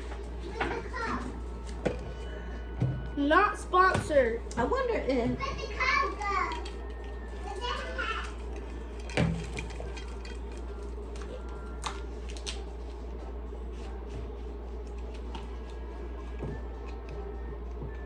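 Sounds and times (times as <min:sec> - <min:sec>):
steady low hum: 0:00.0 - 0:18.0
dishes and utensils clinking: 0:06.4 - 0:12.0.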